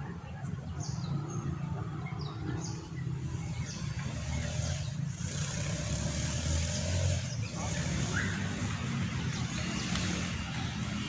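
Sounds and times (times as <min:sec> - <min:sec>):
vehicle passing: 0:02.5 - 0:11.0.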